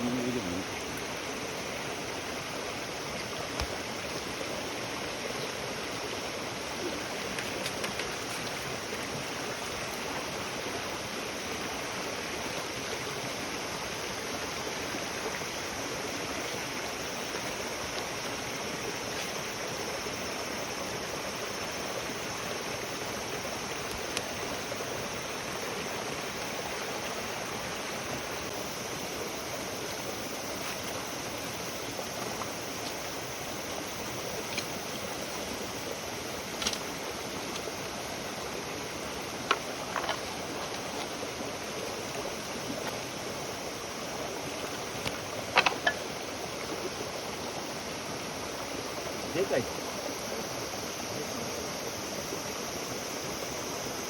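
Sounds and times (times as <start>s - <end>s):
stream water rushing: 0.0s - 54.0s
campfire popping: 6.8s - 8.9s, 36.4s - 37.8s, 39.2s - 41.2s, 44.9s - 46.2s.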